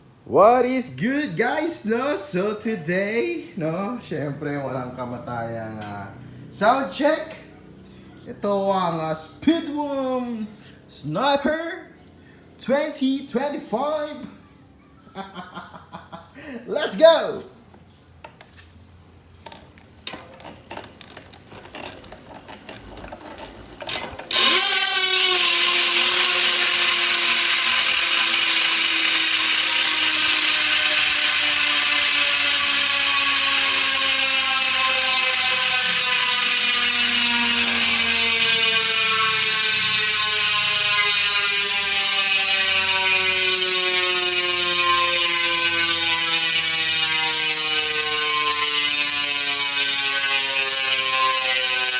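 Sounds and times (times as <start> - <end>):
bicycle freehub ratcheting: 19.4 - 51.9.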